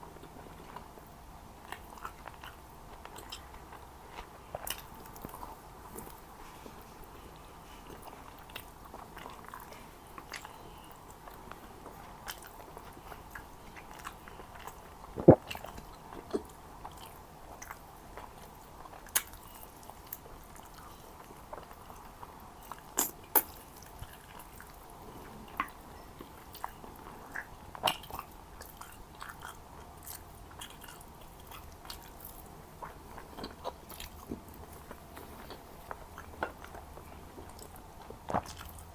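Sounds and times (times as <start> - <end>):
person chewing and biting: 1.7 - 6.2.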